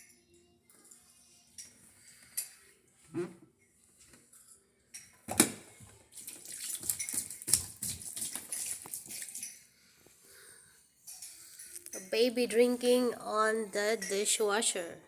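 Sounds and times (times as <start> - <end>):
dishes clinking: 4.3 - 5.8
pet splashing in water: 5.3 - 9.6.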